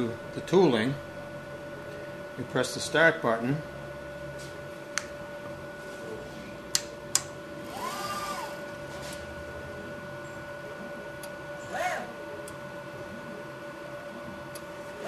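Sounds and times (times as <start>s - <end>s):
steady machine hum: 0.0s - 15.0s
servo whine: 7.6s - 12.3s.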